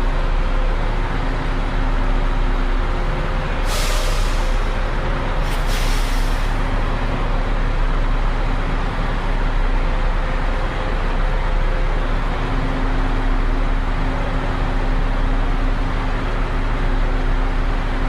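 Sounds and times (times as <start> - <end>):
bus engine idling: 0.0 - 18.0
air brake hissing: 3.6 - 6.6.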